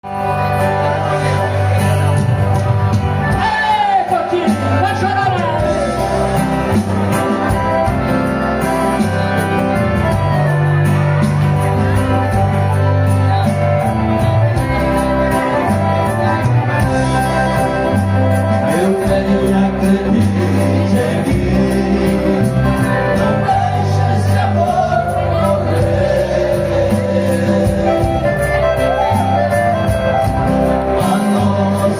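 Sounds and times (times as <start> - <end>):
accordion: 0.0 - 31.9
bass line: 0.0 - 31.9
person singing: 18.3 - 29.2, 30.8 - 31.9.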